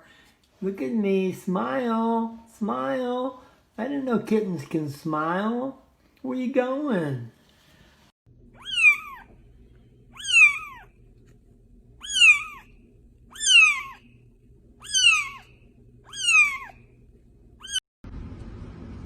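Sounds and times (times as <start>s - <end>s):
kitten meowing: 8.5s - 9.4s, 10.1s - 11.0s, 12.0s - 12.7s, 13.3s - 14.1s, 14.8s - 16.8s, 17.6s - 17.8s.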